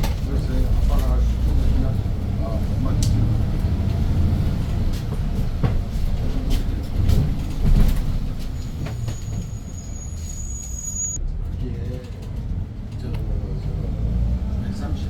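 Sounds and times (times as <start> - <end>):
bus body rattling and knocking: 0.0 - 10.1
bus engine and road rumble: 0.0 - 15.0.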